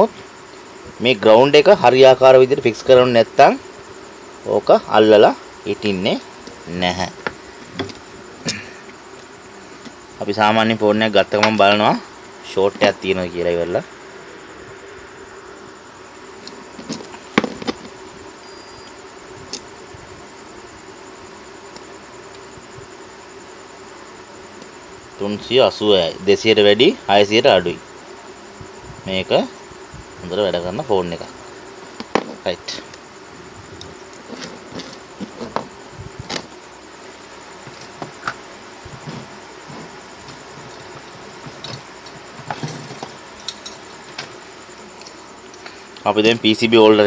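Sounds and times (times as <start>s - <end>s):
electrical buzzing hum: 0.0s - 47.0s
faint high beep: 18.4s - 19.0s.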